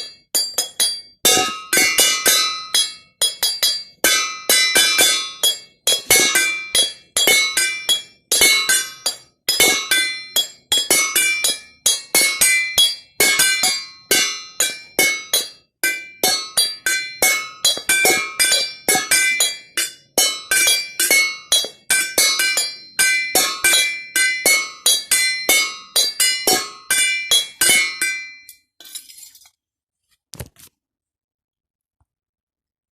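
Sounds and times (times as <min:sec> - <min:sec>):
glasses clinking a melody: 0:00.0 - 0:29.2.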